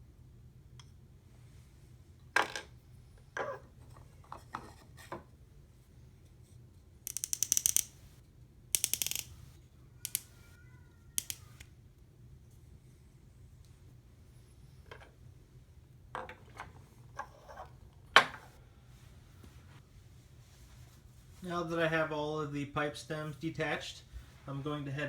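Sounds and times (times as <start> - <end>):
pipes clicking on hard surface: 7.1 - 8.0, 8.8 - 9.3
rapid clicking rattles: 7.1 - 8.0.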